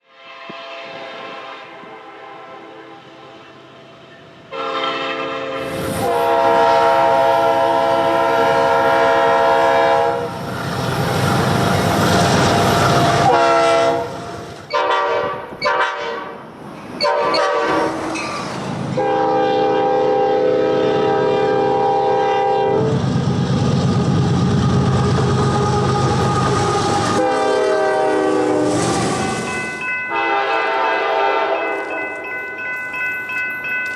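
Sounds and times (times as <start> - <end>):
train horns blowing: 0.0 - 3.6, 4.4 - 10.3, 13.0 - 16.4, 17.0 - 18.1, 19.0 - 23.1, 24.7 - 31.9
passing trains rumbling: 0.0 - 33.9.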